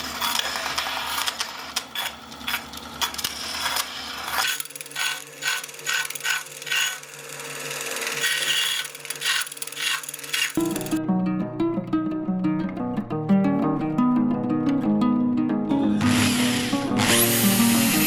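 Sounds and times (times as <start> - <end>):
filing strokes: 0.0 - 11.0.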